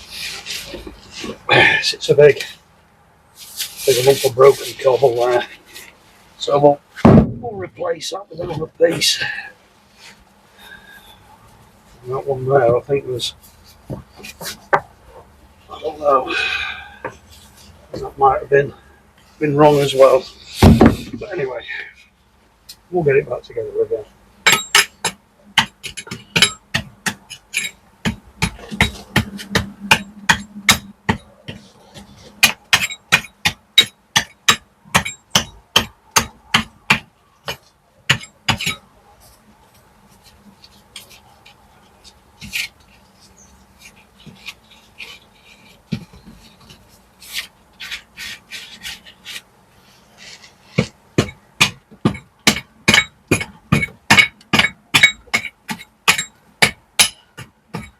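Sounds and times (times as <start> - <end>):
hammer striking chisel: 24.5 - 38.9, 50.8 - 57.9.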